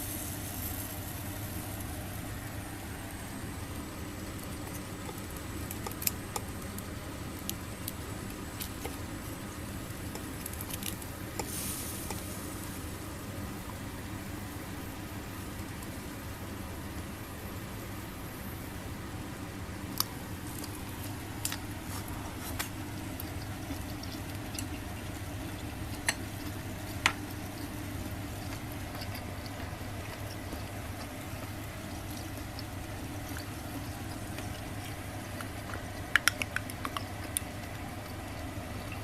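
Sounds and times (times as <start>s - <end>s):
squid sizzling on a grill: 0.0s - 8.6s, 9.7s - 13.2s.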